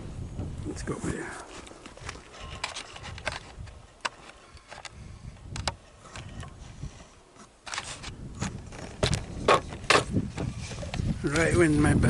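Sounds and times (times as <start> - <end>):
footsteps on rough ground: 0.3 - 5.0.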